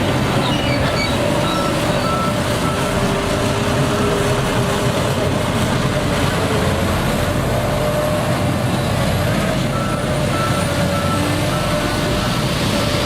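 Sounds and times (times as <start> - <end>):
heavy machine engine running: 0.0 - 13.0
reversing alarm beeping: 0.4 - 4.3, 9.7 - 12.9.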